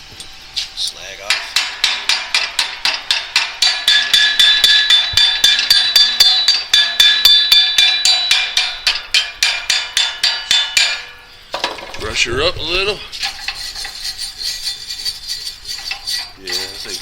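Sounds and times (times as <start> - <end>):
steel ringing: 1.0 - 17.0
chipping hammer striking steel: 1.3 - 11.2.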